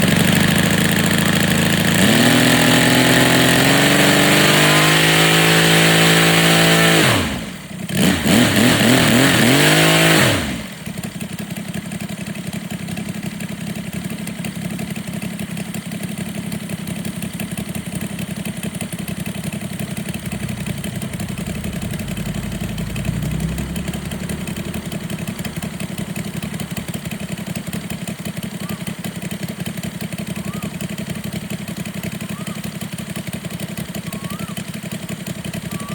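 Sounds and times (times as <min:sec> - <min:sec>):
model aircraft engine running: 0:00.0 - 0:35.9.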